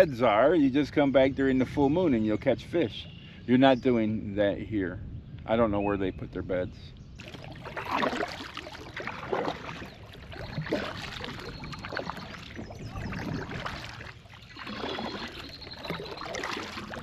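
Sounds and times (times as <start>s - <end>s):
water splashing and lapping: 7.2s - 17.0s.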